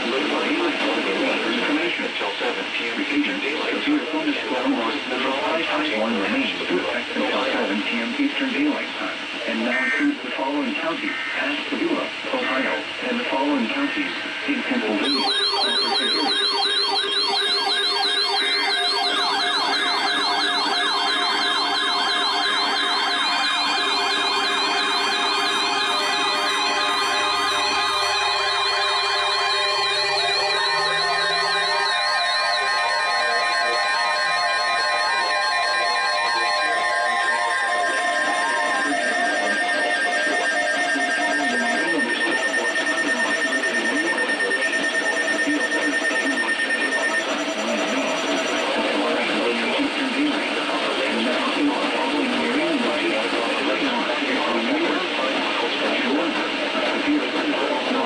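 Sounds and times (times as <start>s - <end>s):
steady tones: 15.0s - 44.4s
electronic sirens yelping: 15.0s - 48.6s.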